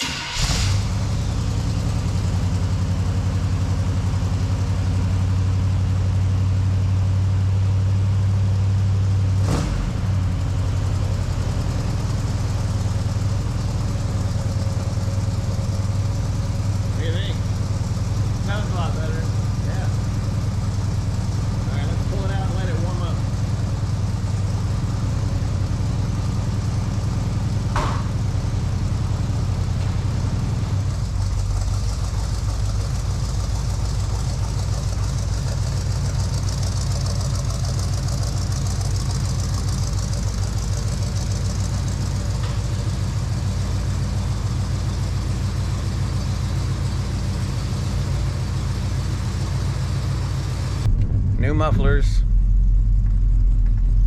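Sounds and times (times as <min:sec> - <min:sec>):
truck engine running: 0:00.0 - 0:54.0.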